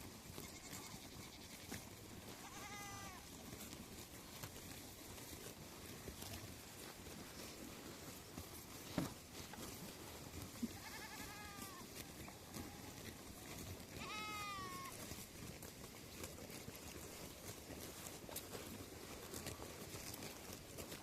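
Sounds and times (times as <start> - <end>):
sheep bleating: 0.2 - 3.4, 10.4 - 15.1.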